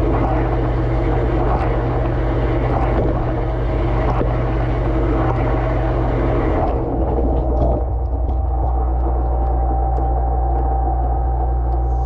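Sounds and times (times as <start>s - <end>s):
dishwasher pump humming: 0.0s - 12.0s.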